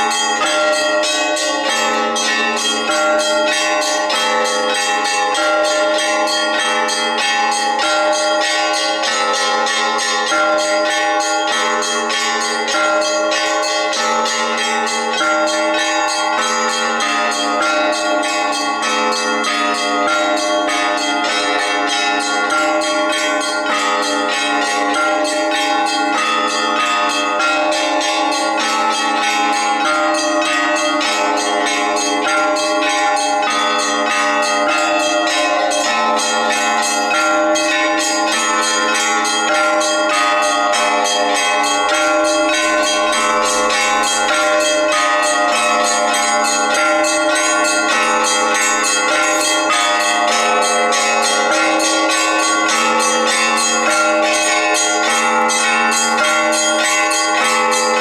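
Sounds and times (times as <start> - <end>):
church bells ringing: 0.0 - 58.0.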